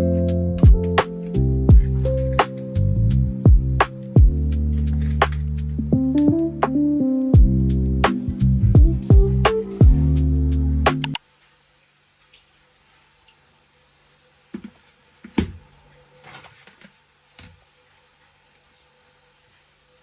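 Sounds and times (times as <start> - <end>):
music: 0.0 - 11.2
low steady hum: 0.0 - 20.0.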